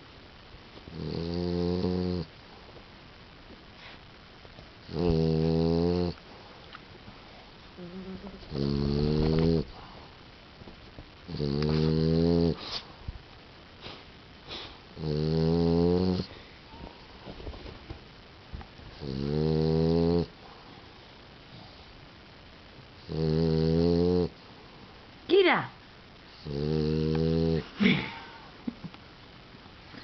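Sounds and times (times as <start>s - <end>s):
pet snoring: 0.9s - 2.3s, 4.8s - 6.2s, 7.8s - 9.8s, 11.3s - 12.8s, 14.5s - 16.4s, 18.9s - 20.4s, 23.0s - 24.4s, 26.3s - 27.7s
soft breathing noises: 3.6s - 4.3s, 6.2s - 10.4s, 16.2s - 17.9s, 20.3s - 22.2s.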